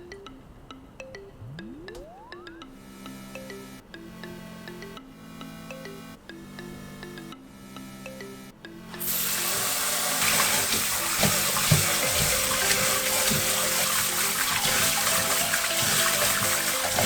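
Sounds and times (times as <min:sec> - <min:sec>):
light background music: 0:00.0 - 0:17.0
water running from tap: 0:09.0 - 0:17.0.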